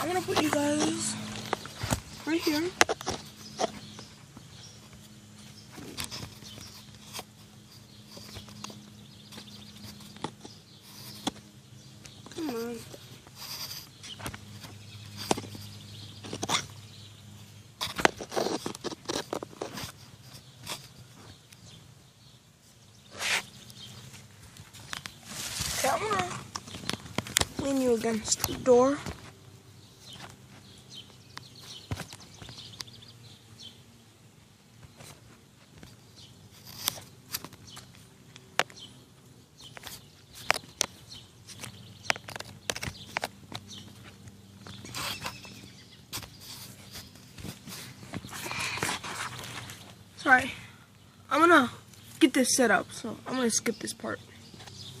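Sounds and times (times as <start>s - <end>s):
device handling clicks and rustles: 39.6s - 45.5s.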